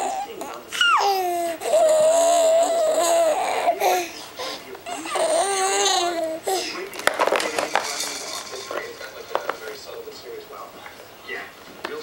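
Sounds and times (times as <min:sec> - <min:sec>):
baby crying and squealing: 0:00.0 - 0:06.6
baby vocalizing: 0:00.0 - 0:06.9.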